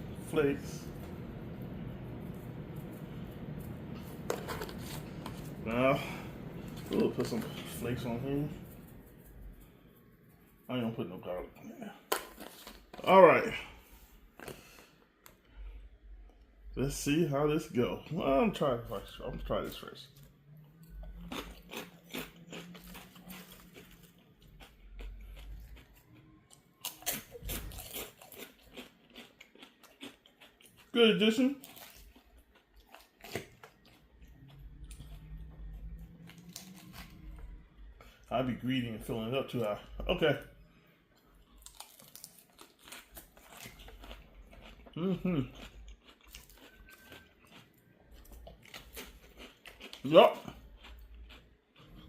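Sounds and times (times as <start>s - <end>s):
person chewing crunchy food: 0.6s - 9.8s, 19.6s - 38.3s, 40.7s - 52.0s.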